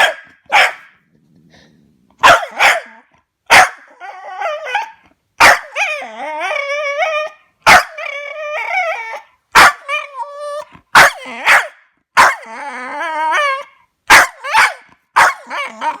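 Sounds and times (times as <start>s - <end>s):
dog barking: 0.0s - 1.0s, 2.2s - 4.0s, 4.7s - 5.9s, 7.6s - 8.0s, 9.6s - 9.9s, 10.9s - 12.5s, 14.1s - 16.0s
dog whining howl: 3.9s - 5.0s, 5.6s - 13.8s, 14.4s - 16.0s.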